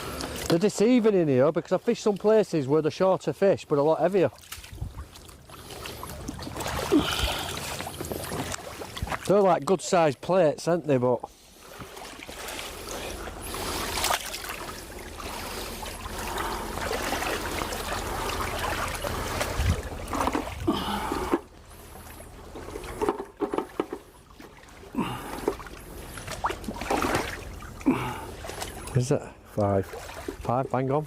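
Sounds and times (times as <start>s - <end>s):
water trickling: 11.3s - 30.9s.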